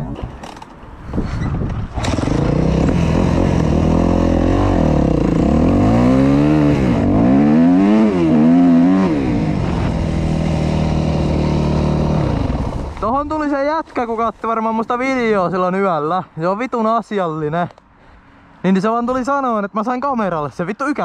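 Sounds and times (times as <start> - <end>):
dirt bike engine revving: 1.9 - 13.0.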